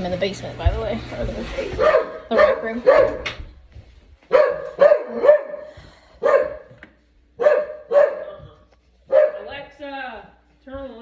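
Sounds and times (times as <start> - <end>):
dog barking: 1.8 - 3.4, 4.3 - 6.8, 7.4 - 9.6.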